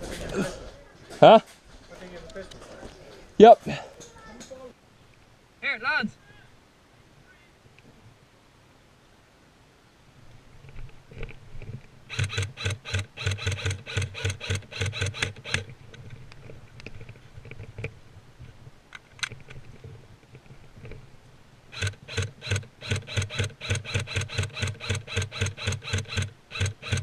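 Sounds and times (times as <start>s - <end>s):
airsoft gun firing: 21.8s - 27.0s.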